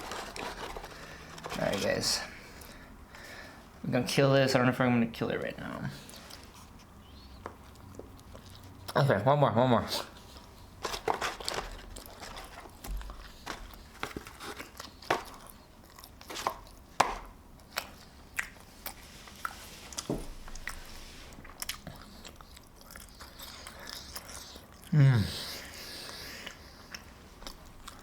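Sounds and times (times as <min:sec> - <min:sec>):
person chewing food: 0:06.0 - 0:09.0, 0:10.1 - 0:28.0.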